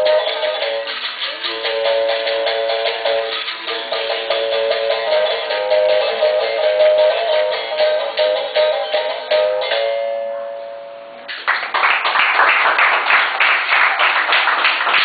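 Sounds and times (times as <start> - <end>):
fast hand clapping: 11.3 - 15.0.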